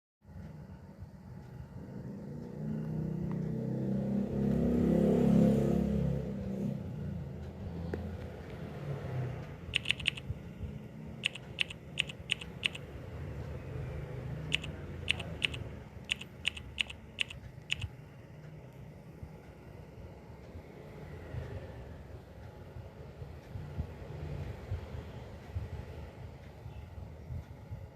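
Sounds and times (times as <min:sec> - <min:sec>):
short sharp clicks: 0:14.5 - 0:17.9.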